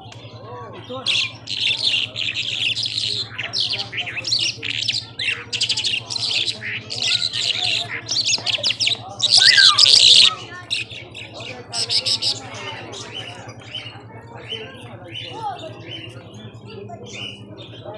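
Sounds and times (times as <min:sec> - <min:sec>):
lark singing: 0:01.1 - 0:13.9.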